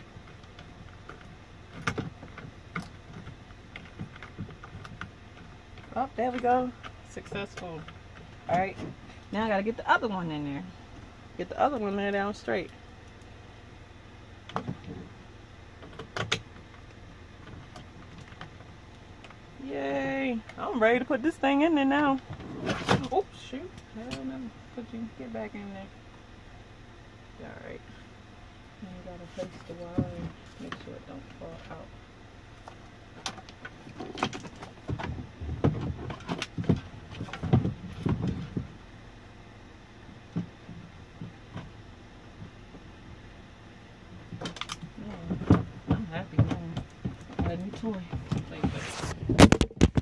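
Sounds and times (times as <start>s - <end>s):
low steady hum: 0.0s - 50.0s
clicks knocks and thumps of handling parts: 32.6s - 38.7s, 44.2s - 50.0s.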